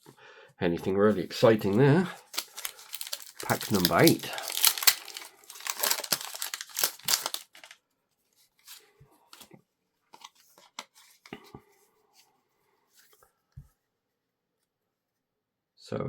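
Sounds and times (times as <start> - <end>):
cards rustling and clicking: 1.4 - 7.8
foil wrapper tearing and crinkling: 2.2 - 7.8.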